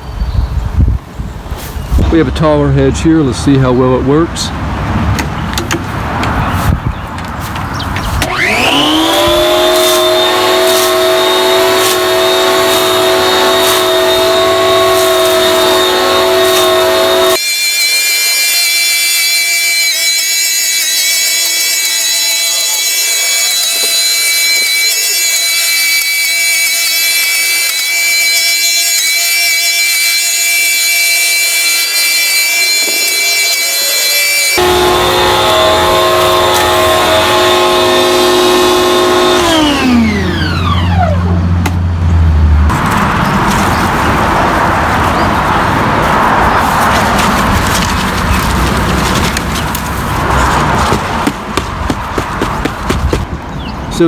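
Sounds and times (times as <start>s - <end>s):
hedge trimmer motor whining: 7.8s - 42.2s, 46.6s - 54.0s.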